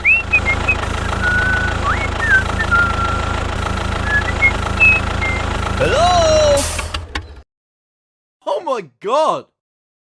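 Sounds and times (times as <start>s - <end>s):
small engine humming: 0.0s - 7.2s.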